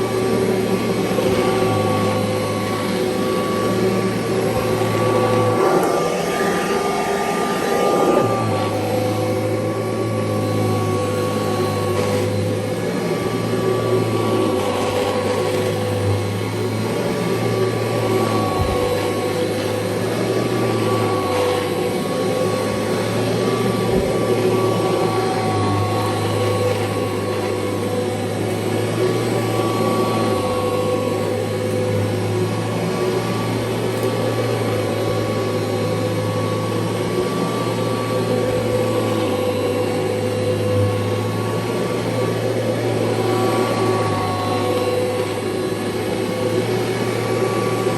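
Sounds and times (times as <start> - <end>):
vacuum cleaner running: 0.0 - 47.9.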